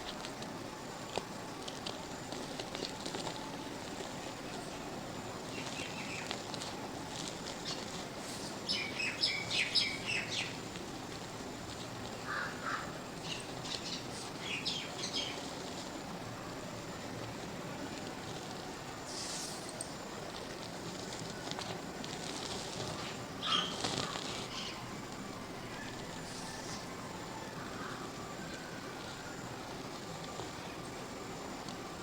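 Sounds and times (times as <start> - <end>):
birds chirping: 5.4 - 6.4, 7.6 - 10.7, 12.2 - 15.6, 23.0 - 24.9.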